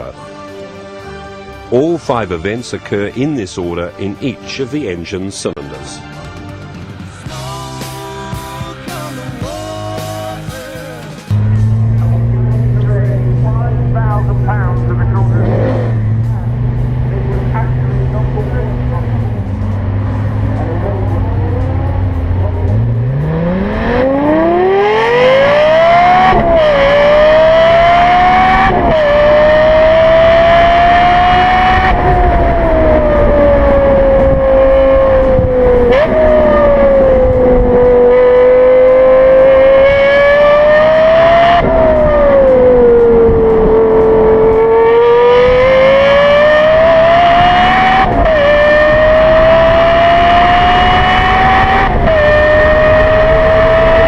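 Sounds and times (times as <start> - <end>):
car engine revving hard: 11.3 - 54.0.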